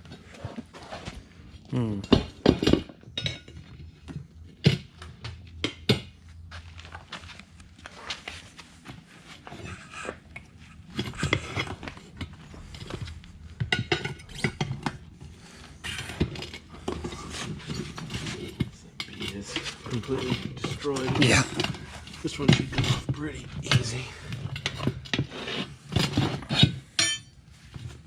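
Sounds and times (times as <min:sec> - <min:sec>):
metal tools clinking and scraping: 0:09.4 - 0:28.0.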